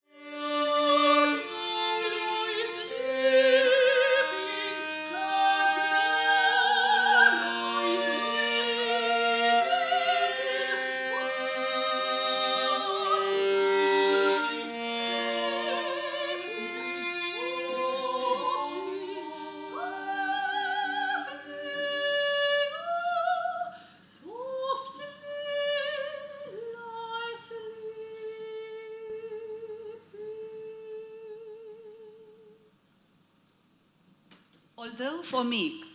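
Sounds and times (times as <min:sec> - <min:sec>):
operatic singing voices: 0:00.5 - 0:23.5.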